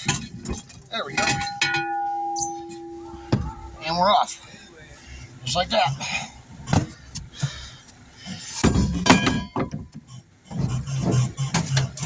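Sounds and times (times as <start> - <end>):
loud metallic clank: 0.0 - 4.1
tire and wheel rim thunks: 0.0 - 4.2, 6.6 - 12.0.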